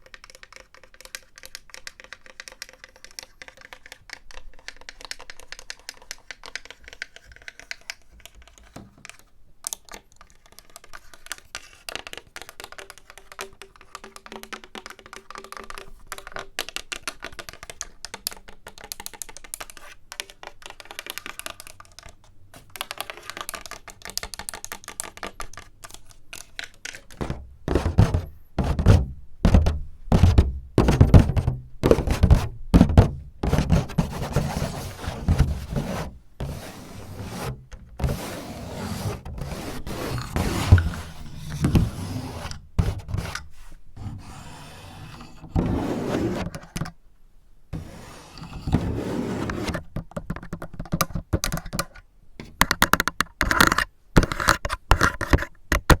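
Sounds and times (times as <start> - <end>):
fingers tapping on a surface: 12.0 - 21.8, 27.1 - 36.2
dull knocks: 27.2 - 34.6
scraping: 27.2 - 46.5.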